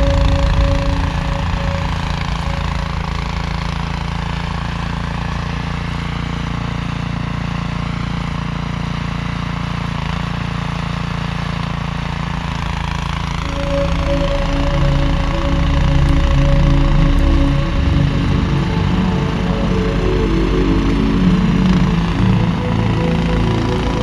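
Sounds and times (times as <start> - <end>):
steady tones: 0.0 - 4.5, 13.4 - 24.0
engine droning: 0.0 - 24.0.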